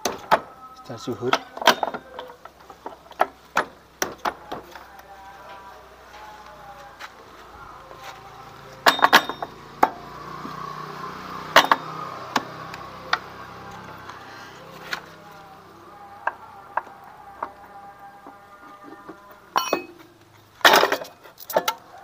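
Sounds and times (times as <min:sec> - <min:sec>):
faint call to prayer singing: 0:00.0 - 0:22.0
hand tools clinking on metal: 0:01.2 - 0:04.4, 0:08.8 - 0:09.6, 0:19.6 - 0:22.0.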